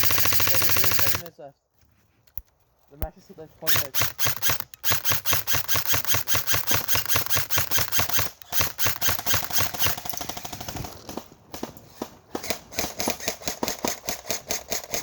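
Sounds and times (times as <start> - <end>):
fast mechanical clicking: 0.0 - 1.3, 3.7 - 11.0.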